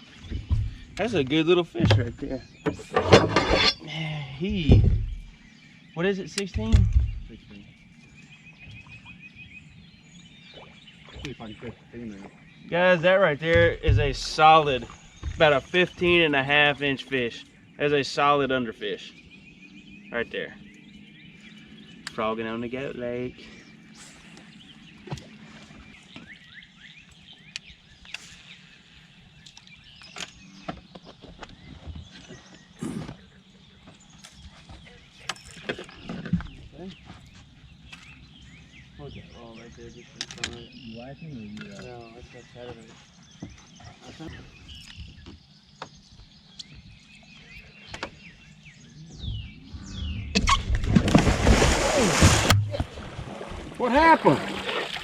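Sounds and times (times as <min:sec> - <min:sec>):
small birds chirping: 0:00.0 - 0:52.9
knocks and scuffs on boat deck: 0:00.1 - 0:03.4, 0:04.5 - 0:05.4, 0:06.5 - 0:07.4, 0:13.5 - 0:16.3
descending bird whistles: 0:48.9 - 0:50.8
person falling into water: 0:50.4 - 0:55.0.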